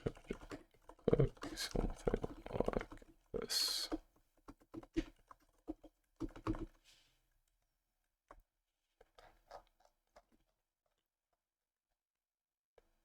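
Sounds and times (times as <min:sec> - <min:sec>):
computer keyboard typing: 0:00.0 - 0:03.2, 0:03.9 - 0:06.8.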